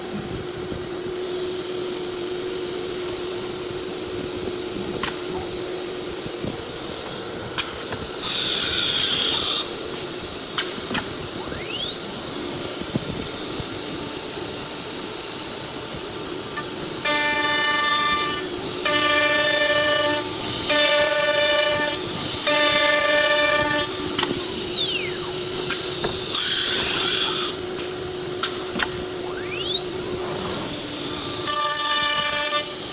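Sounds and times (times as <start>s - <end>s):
pitched whine: 10.7s - 32.9s
machine hum: 11.0s - 32.9s.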